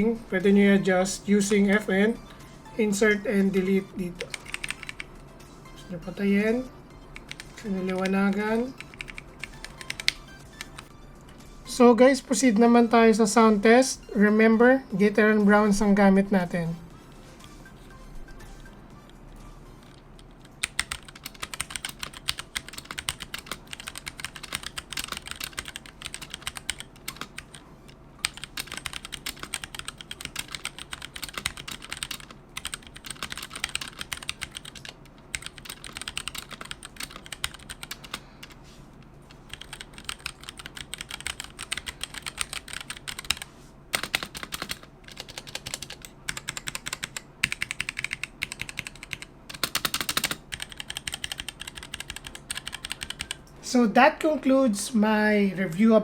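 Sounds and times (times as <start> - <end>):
mechanical keyboard typing: 4.2 - 5.1, 7.1 - 10.9, 19.8 - 27.6, 28.2 - 38.6, 39.4 - 53.4.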